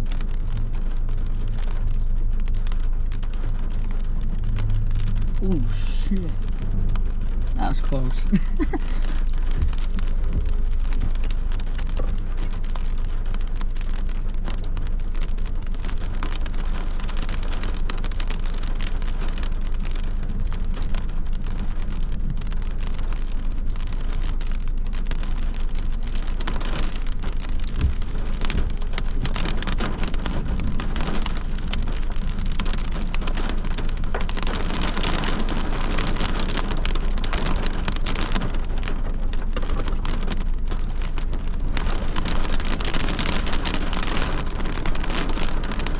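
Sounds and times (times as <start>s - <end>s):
heavy rain falling: 0.0s - 45.9s
low thunder rumble: 8.9s - 13.4s, 24.6s - 45.9s.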